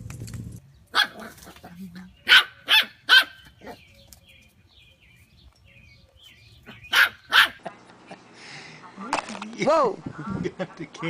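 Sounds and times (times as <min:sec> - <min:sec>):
dog barking: 0:00.9 - 0:01.5, 0:02.2 - 0:03.8, 0:06.7 - 0:07.7.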